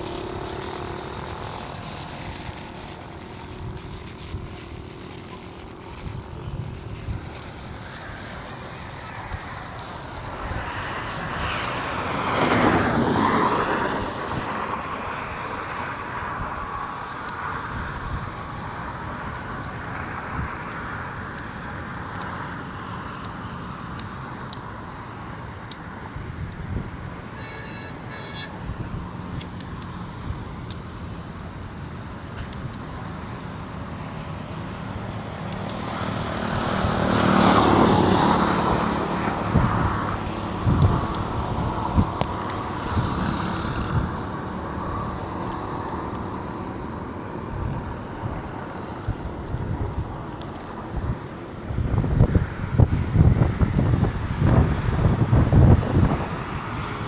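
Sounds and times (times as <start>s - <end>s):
vehicle passing close by: 0.0s - 16.9s, 34.4s - 57.0s
highway traffic hum: 0.0s - 57.0s.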